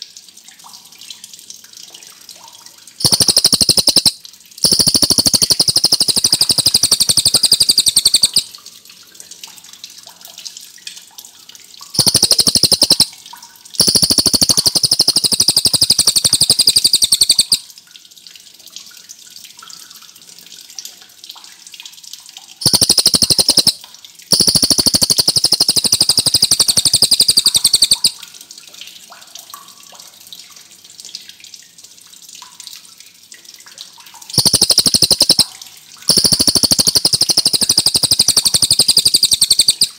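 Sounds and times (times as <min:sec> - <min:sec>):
songbird rapid rolling trills: 0:03.0 - 0:08.4, 0:12.0 - 0:13.1, 0:13.8 - 0:17.6, 0:22.6 - 0:28.1, 0:34.4 - 0:35.4, 0:36.1 - 0:39.9.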